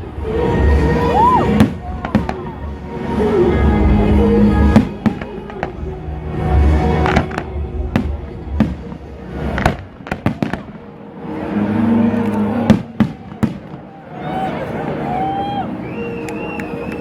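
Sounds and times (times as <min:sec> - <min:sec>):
music with long held notes: 0:00.0 - 0:17.0
fireworks bangs and crackles: 0:01.5 - 0:02.7, 0:06.6 - 0:10.9, 0:12.7 - 0:14.0.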